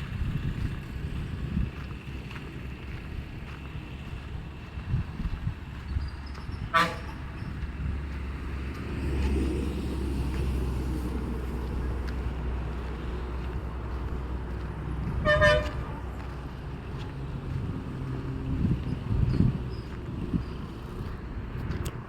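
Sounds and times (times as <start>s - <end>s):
low rumble of traffic: 0.0s - 22.0s
vehicle horn toots: 6.6s - 7.3s, 15.2s - 16.0s.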